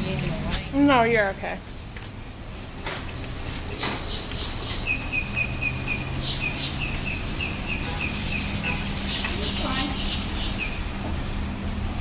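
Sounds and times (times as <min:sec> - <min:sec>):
bird chirping: 0:04.0 - 0:10.8.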